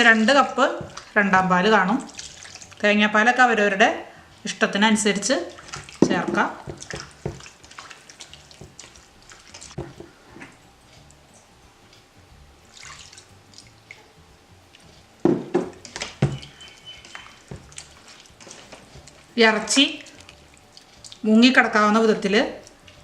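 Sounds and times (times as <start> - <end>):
liquid pouring and splashing: 0.0 - 1.2, 1.8 - 2.9, 5.4 - 10.3, 12.7 - 14.0, 14.8 - 21.3
utensil knocking: 5.6 - 7.5, 9.7 - 10.2, 15.2 - 19.1.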